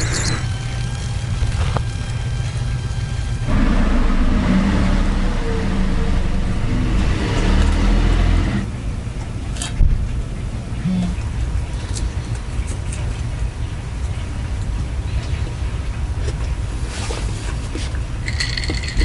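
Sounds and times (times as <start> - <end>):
low rumble: 0.4 - 10.6
short sharp sound: 3.5 - 8.5
car passing: 3.5 - 8.8.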